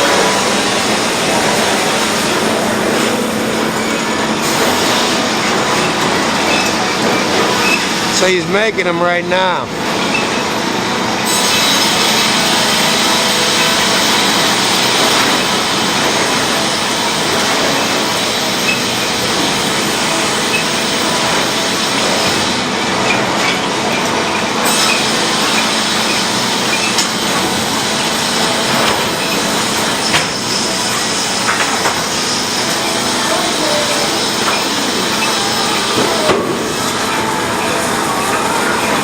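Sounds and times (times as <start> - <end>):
saw cutting a log: 11.2 - 36.9.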